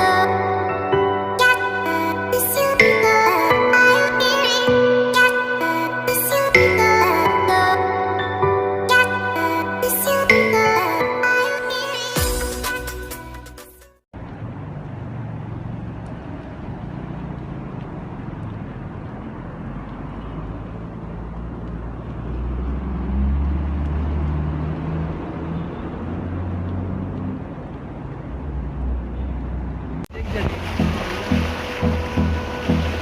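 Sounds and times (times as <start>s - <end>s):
vehicle engine humming: 14.1s - 33.0s.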